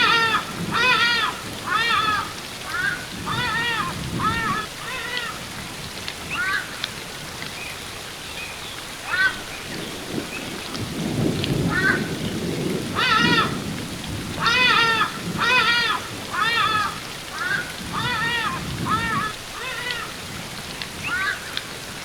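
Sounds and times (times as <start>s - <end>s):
ibis calling: 0.0s - 5.4s
waterfall rushing: 0.0s - 22.0s.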